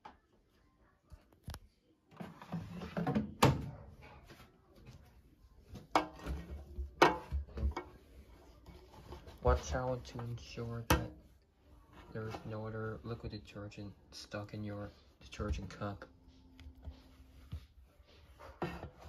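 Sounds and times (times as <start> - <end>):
rustling and scraping: 4.0 - 13.4.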